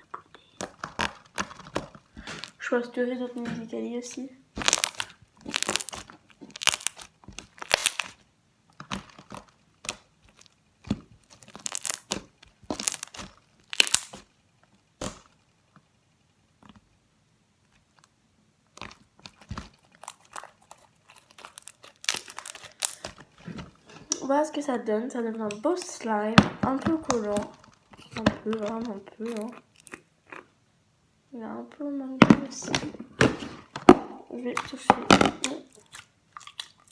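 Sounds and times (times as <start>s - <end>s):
slime squeezed and stretched: 4.6s - 8.2s, 11.2s - 14.2s, 18.8s - 23.2s.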